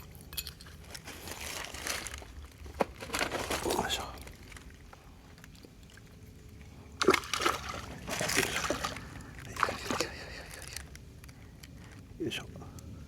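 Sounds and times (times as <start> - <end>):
fish splashing in water: 7.0 - 10.2.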